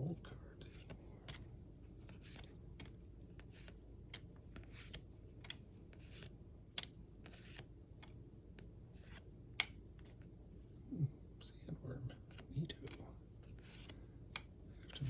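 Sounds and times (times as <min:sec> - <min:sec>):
cards swishing and ticking: 0:00.6 - 0:10.4, 0:12.2 - 0:15.0.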